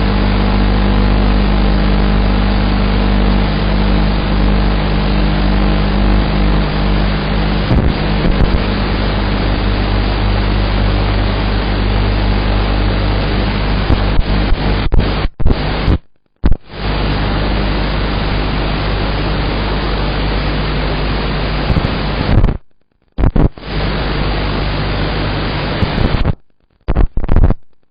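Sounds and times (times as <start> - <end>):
low motor hum: 0.0 - 14.9
loud steady hiss: 4.2 - 15.9, 23.6 - 26.3
crackling clicks: 5.4 - 11.9, 13.8 - 16.7, 25.7 - 27.9.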